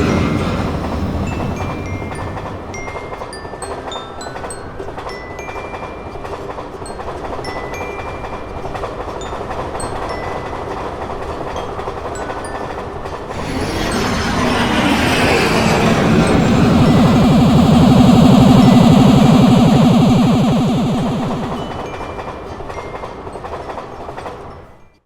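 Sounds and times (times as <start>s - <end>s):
train rumbling on rails: 0.0s - 2.8s, 13.3s - 21.8s.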